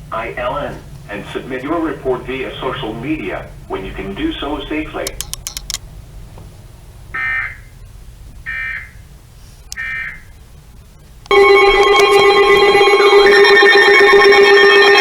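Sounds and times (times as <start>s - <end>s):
loud steady attention tone: 9.7s - 15.0s.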